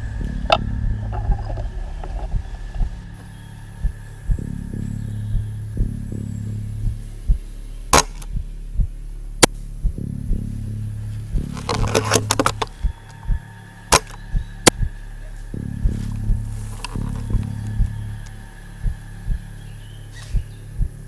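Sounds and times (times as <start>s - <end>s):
music with pulsing beat: 0.0s - 21.0s
sharp clicks: 7.9s - 8.4s, 11.4s - 14.9s.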